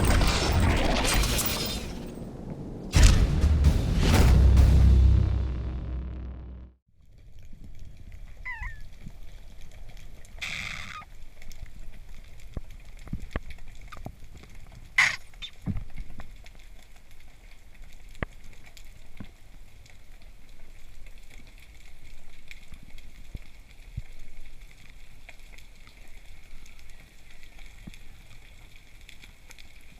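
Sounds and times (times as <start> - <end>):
sharp loud click: 3.0 - 4.7
underwater clicks and crackles: 7.2 - 29.9.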